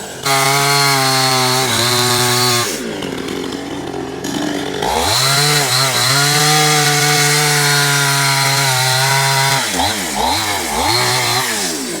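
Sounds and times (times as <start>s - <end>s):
chainsaw engine revving: 0.0s - 12.0s.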